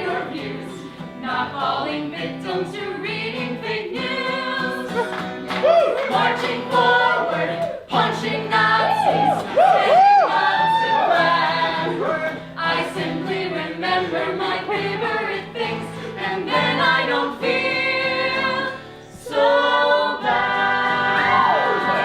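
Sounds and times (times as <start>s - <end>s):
voices singing in harmony: 0.0s - 22.0s
audience whooping and cheering: 5.0s - 6.2s, 8.7s - 12.4s, 21.1s - 22.0s.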